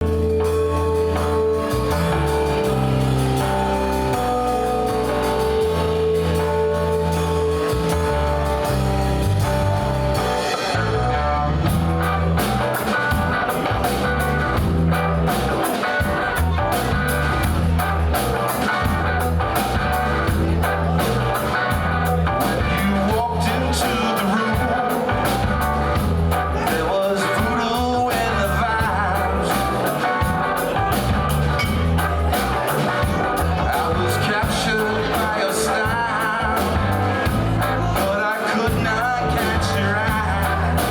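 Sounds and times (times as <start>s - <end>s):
rock music on radio: 0.0s - 40.9s
steady drum beat: 0.0s - 40.9s.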